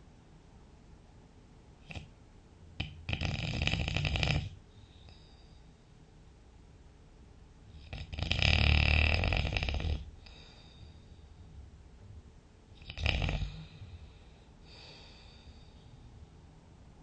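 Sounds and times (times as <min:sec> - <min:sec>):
person snoring: 0:02.8 - 0:04.6, 0:07.8 - 0:11.0, 0:12.8 - 0:14.1
faint breath: 0:04.6 - 0:06.3, 0:10.1 - 0:11.8, 0:13.4 - 0:16.5.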